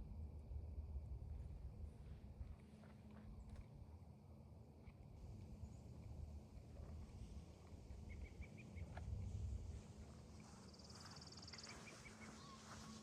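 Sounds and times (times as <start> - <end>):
low rumble of wind: 0.0 - 13.0
faint bird chirps: 10.6 - 13.0.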